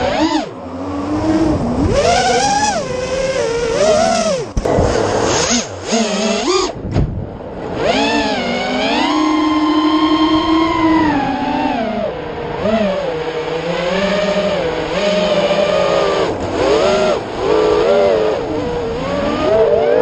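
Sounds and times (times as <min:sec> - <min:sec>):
drone motors whining: 0:00.0 - 0:20.0.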